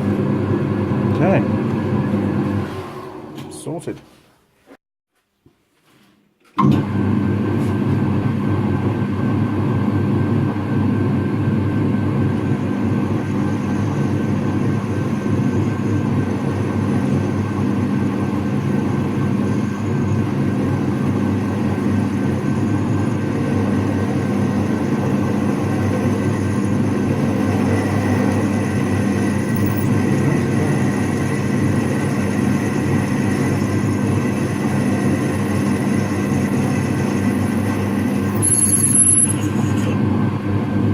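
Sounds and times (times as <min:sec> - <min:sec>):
motorised machine humming: 0:12.2 - 0:40.4.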